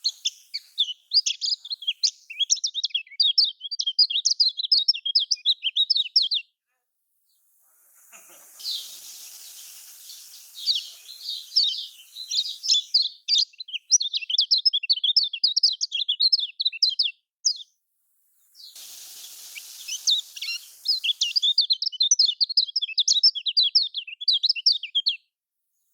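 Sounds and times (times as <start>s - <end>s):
faint hiss: 0.0s - 2.5s, 7.1s - 13.4s, 18.0s - 21.6s
bird chirping song: 0.0s - 6.6s, 8.1s - 17.8s, 18.4s - 25.3s.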